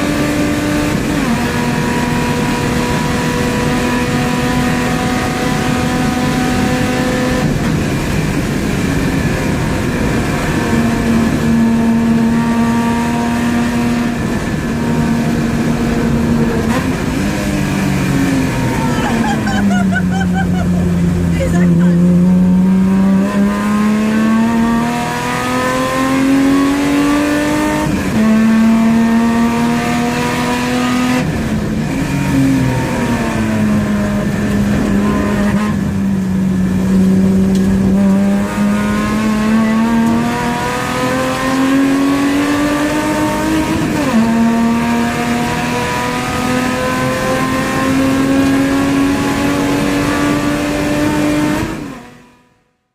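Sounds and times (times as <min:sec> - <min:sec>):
race car engine accelerating: 0:00.0 - 0:52.6.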